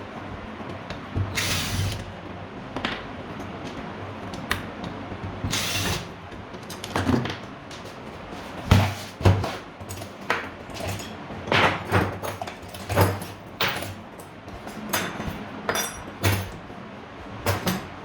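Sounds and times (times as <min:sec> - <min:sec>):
metal parts knocking and scraping: 0:08.8 - 0:16.6, 0:17.4 - 0:18.0.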